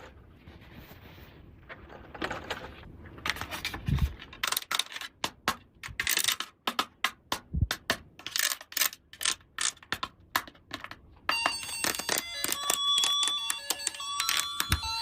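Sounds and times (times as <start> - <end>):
plastic toy pieces clicking: 3.2 - 15.0
tinkling bell-like melody: 11.3 - 15.0.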